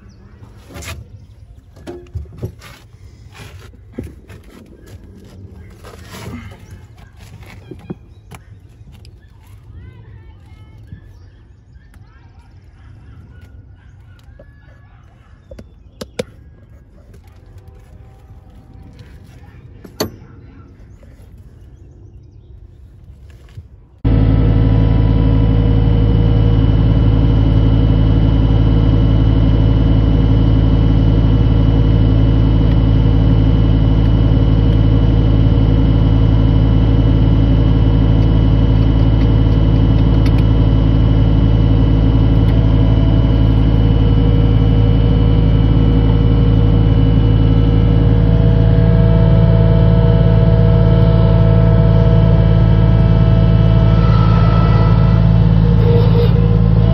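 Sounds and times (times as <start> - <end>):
vehicle engine low drone: 0.0 - 56.9.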